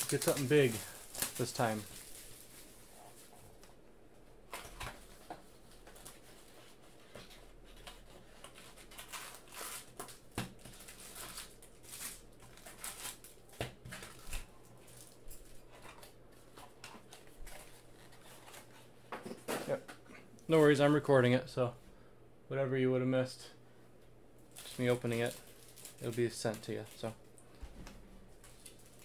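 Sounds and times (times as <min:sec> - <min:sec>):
plastic wrapping crinkling and tearing: 0:00.0 - 0:03.4, 0:07.7 - 0:18.8, 0:24.5 - 0:27.4, 0:28.4 - 0:29.0.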